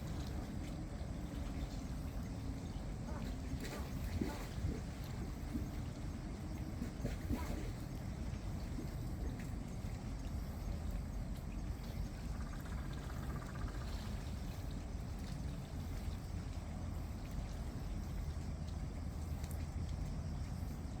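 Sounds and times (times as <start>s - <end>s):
rain: 0.0s - 12.0s, 12.6s - 21.0s
sea waves: 1.2s - 5.8s
faint ticks: 16.5s - 20.8s.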